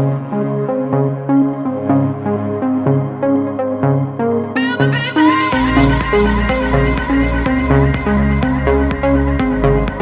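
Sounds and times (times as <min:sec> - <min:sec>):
electronic dance music: 0:03.8 - 0:10.0.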